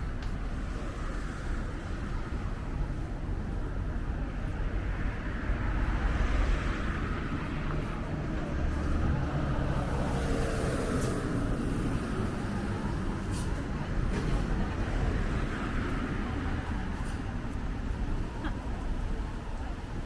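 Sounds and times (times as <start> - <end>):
road traffic: 0.0 - 20.0.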